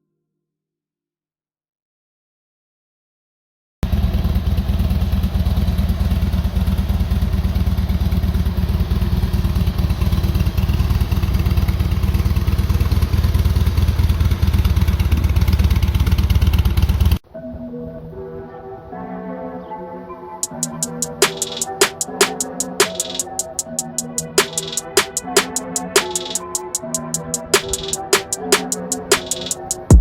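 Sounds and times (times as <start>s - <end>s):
motorcycle engine running: 3.8s - 17.2s.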